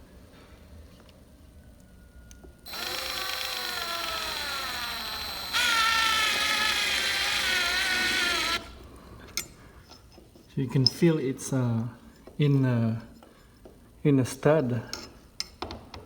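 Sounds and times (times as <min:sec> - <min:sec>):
power drill motor whine: 0:02.6 - 0:08.7.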